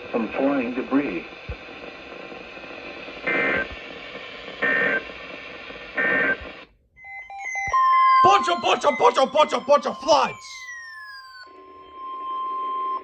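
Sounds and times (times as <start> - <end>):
radio hiss: 0.0 - 6.6, 8.2 - 10.6
short beeps: 7.0 - 11.6
steady tone: 7.0 - 11.9
two-pitch data tone bursts: 7.0 - 13.0.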